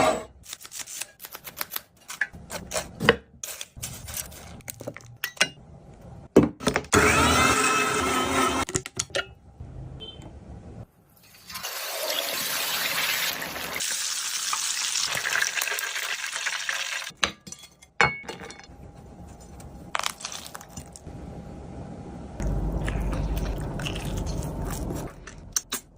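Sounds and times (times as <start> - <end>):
chicken sizzling in frying oil: 11.2 - 17.1.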